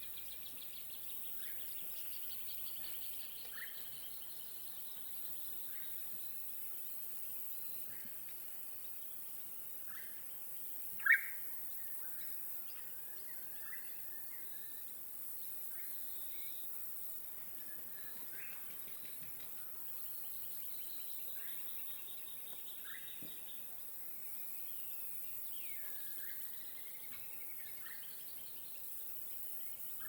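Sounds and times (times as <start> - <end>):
bird calls and chirps: 0.0 - 6.4, 10.9 - 14.9, 17.4 - 24.0.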